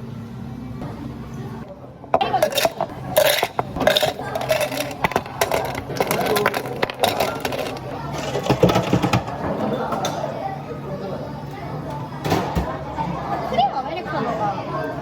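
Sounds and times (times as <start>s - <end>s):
murmur of voices: 0.0s - 15.0s
cups and glassware clinking: 2.2s - 10.2s.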